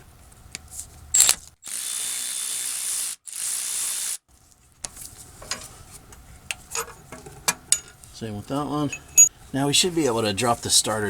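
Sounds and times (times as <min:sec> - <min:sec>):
electric ratchet spinning: 0:01.2 - 0:04.2.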